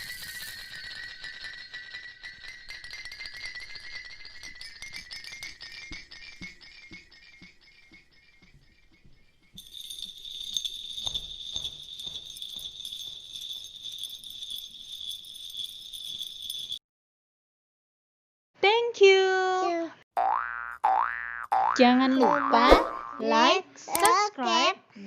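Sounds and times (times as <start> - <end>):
jingling bells: 0.0 - 7.8, 9.6 - 16.8.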